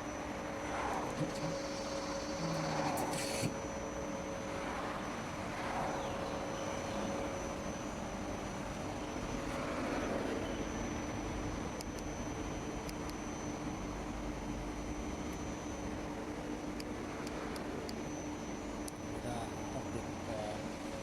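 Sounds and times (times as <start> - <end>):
lathe humming with high whine: 0.0 - 21.0.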